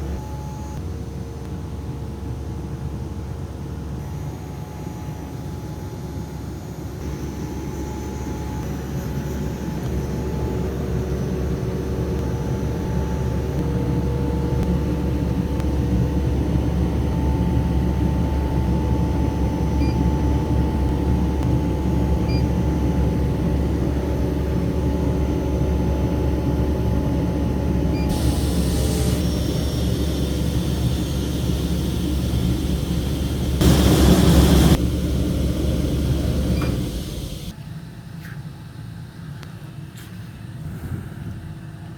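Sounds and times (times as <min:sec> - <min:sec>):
large machine droning: 0:00.0 - 0:37.6
burst of hiss: 0:28.1 - 0:37.5.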